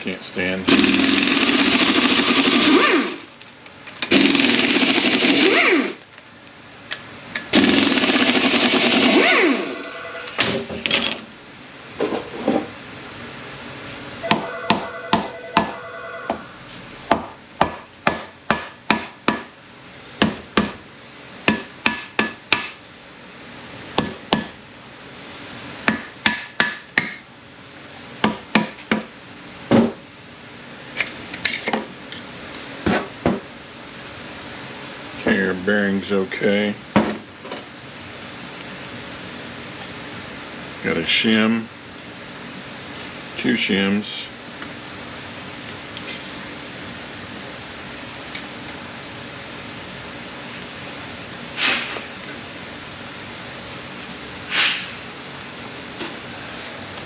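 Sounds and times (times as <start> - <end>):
power tool running: 0.7 - 3.3, 4.0 - 6.0, 7.5 - 10.4.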